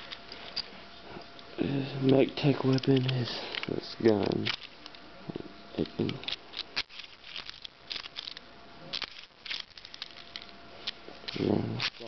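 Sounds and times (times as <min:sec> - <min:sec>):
plastic toy parts clicking: 0:02.1 - 0:05.0, 0:05.8 - 0:12.0.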